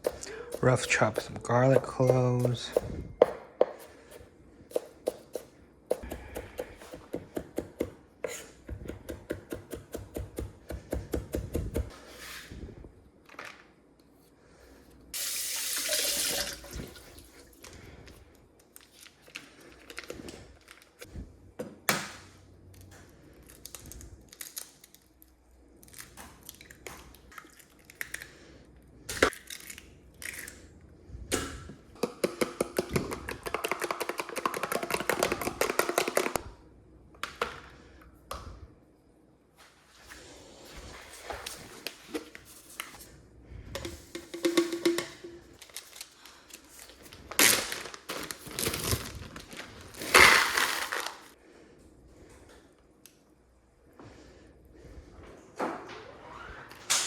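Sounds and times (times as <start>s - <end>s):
knife chopping on cutting board: 4.7s - 11.9s.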